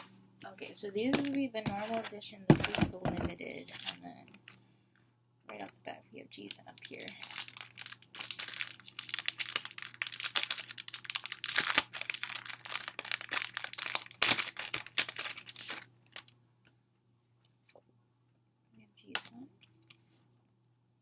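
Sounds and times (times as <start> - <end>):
plastic packaging crinkling: 6.5 - 16.3.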